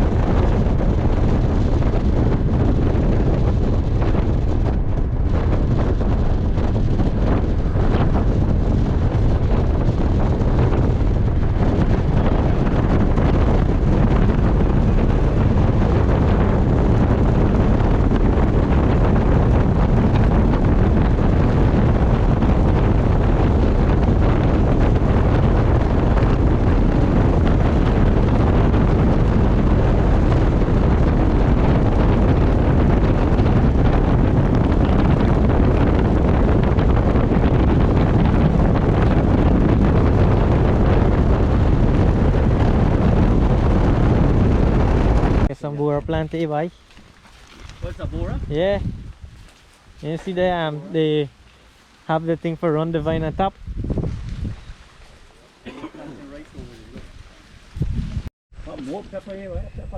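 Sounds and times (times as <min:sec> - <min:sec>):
low rumble: 0:00.0 - 0:59.9
wind buffeting microphone: 0:00.0 - 0:59.9.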